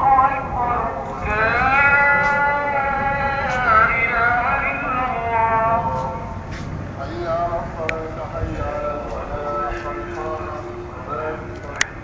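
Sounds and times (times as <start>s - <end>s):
person singing a long held note: 7.0s - 12.0s.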